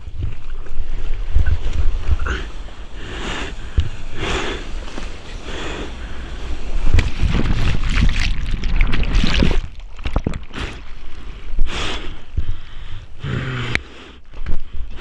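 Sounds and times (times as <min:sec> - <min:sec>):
seawater rushing and splashing: 0:00.0 - 0:12.3
wind gusts: 0:00.0 - 0:15.0.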